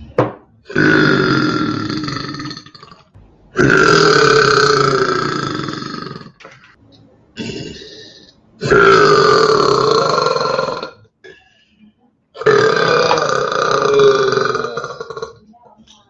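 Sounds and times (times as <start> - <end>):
person belching: 0.6 - 6.4, 7.4 - 11.4, 12.4 - 15.4.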